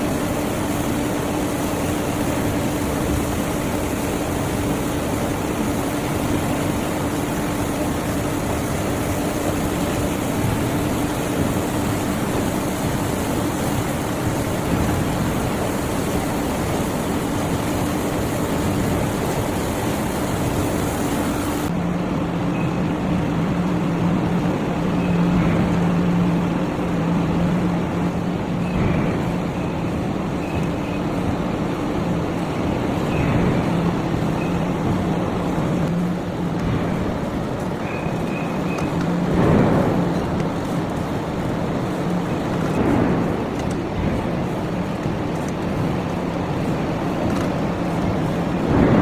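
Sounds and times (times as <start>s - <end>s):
heavy machinery humming: 0.0s - 49.0s
high machine squeals: 37.8s - 39.0s.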